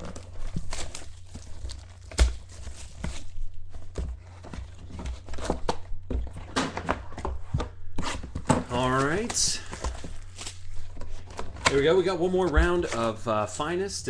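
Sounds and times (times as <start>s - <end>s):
wrapping rustling: 0.0s - 5.7s, 8.9s - 13.3s.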